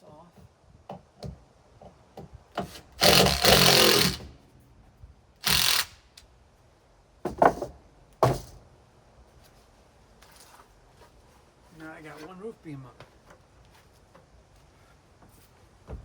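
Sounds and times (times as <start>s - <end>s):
cordless drill driving screw: 2.6s - 4.3s, 5.4s - 6.1s.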